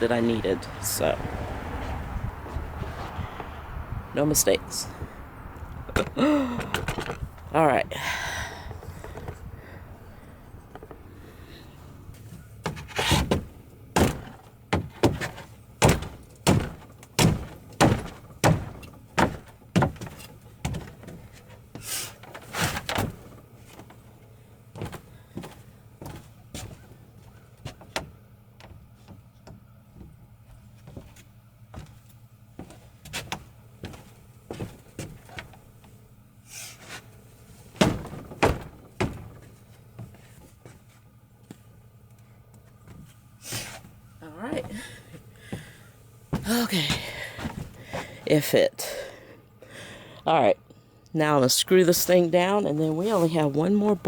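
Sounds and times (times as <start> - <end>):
heavy wooden thuds: 8.2 - 9.7, 12.6 - 21.4, 37.8 - 40.2, 45.5 - 48.2.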